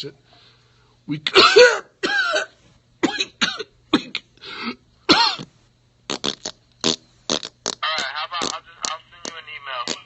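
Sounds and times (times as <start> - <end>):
man coughing: 1.3 - 5.5.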